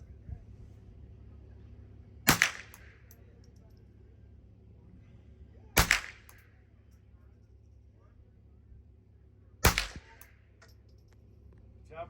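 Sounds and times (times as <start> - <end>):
gunshots with echo: 2.3 - 3.0, 5.8 - 6.4, 9.6 - 10.3.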